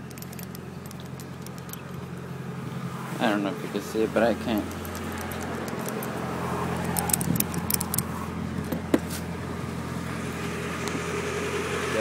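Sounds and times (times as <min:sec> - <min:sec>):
metallic clicks from tools: 0:00.0 - 0:02.1, 0:04.5 - 0:08.1
car engine idling: 0:00.0 - 0:12.0.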